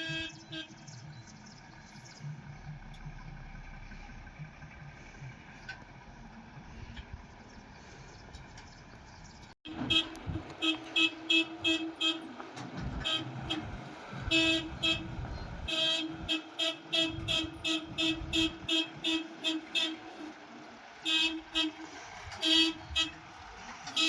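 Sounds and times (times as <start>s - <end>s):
vehicle horn short beeps: 0.0s - 0.8s, 9.7s - 12.3s, 12.9s - 20.1s, 21.0s - 24.0s
engine idling: 0.0s - 24.0s.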